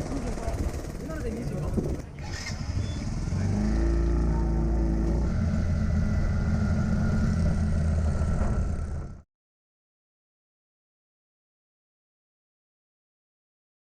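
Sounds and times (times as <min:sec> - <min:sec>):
machine humming: 0:00.0 - 0:09.2.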